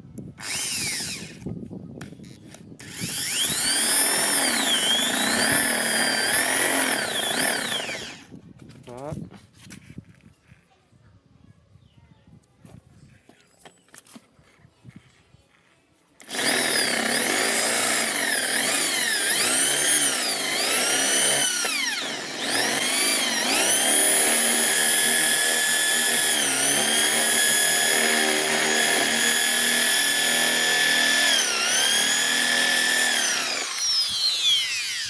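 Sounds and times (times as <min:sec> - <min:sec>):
drill whining into masonry: 0:00.4 - 0:08.4, 0:16.2 - 0:35.0.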